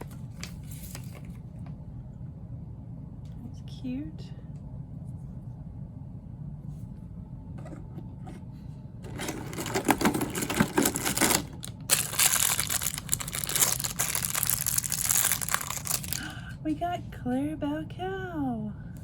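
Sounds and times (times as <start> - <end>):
toy packaging crinkling and tearing: 9.1 - 16.3.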